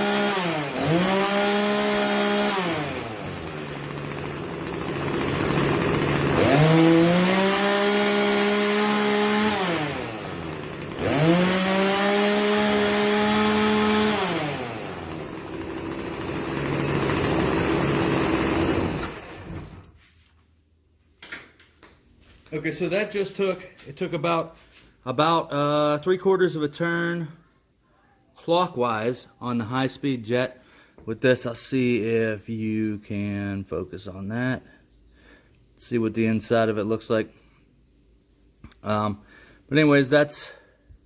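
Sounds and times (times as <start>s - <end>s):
chainsaw revving and idling: 0.0s - 19.9s.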